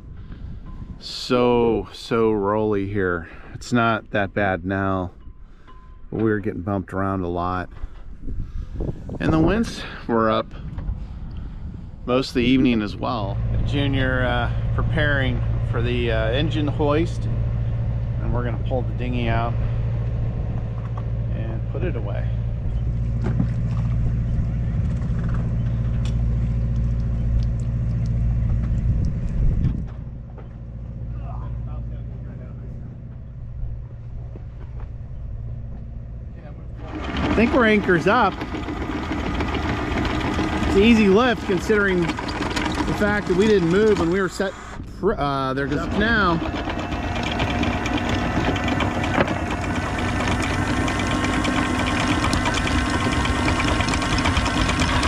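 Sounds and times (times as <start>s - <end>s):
boat engine idling: 7.0s - 55.0s.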